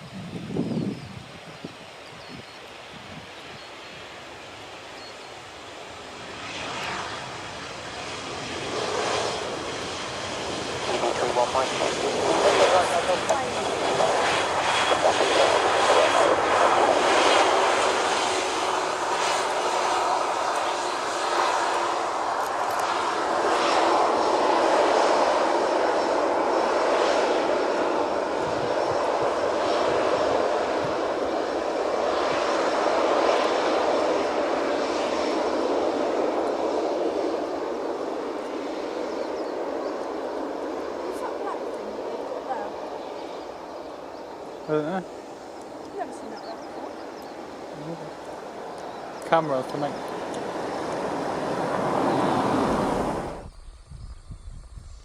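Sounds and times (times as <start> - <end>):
airliner engines running: 0.0 - 55.0.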